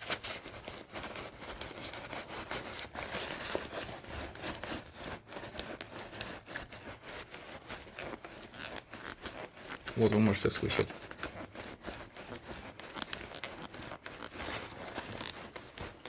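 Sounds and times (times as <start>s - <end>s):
backpack frame wire creaking: 2.5s - 16.0s.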